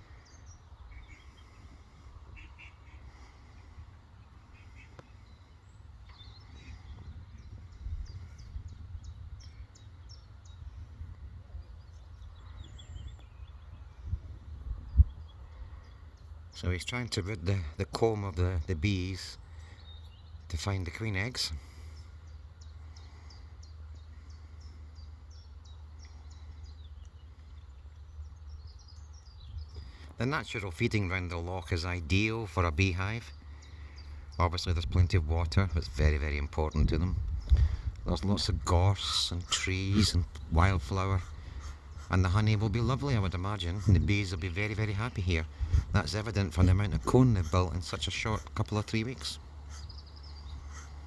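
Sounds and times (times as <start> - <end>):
wind rumble on microphone: 5.3 - 16.0, 34.5 - 48.6
small bird chirping: 32.1 - 51.0.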